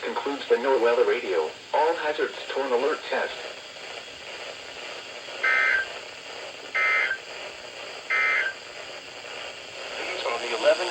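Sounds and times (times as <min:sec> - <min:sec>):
radio hiss: 0:00.0 - 0:10.9
buzzy digital data tone bursts: 0:05.3 - 0:06.1, 0:06.7 - 0:07.3, 0:08.0 - 0:08.8.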